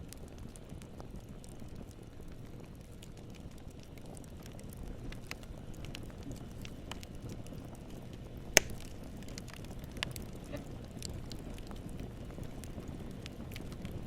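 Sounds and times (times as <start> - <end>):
fire flames rustling: 0.0 - 14.0
wood crackling: 0.0 - 14.0
loud sharp pop: 8.6 - 8.9.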